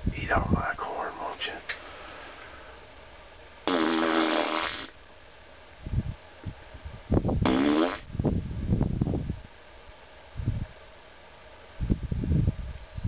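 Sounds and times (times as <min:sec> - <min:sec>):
loud buzzing fart: 0:03.6 - 0:05.0, 0:07.3 - 0:08.2.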